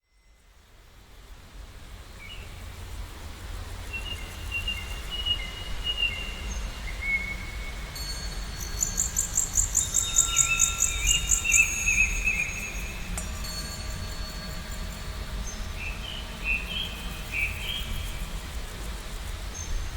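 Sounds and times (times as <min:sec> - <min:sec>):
birds whistling and chirping: 0:08.6 - 0:14.8.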